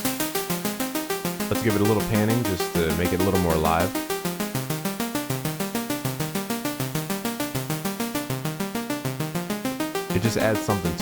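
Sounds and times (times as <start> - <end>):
synthesizer arpeggio with hiss: 0.0 - 11.0.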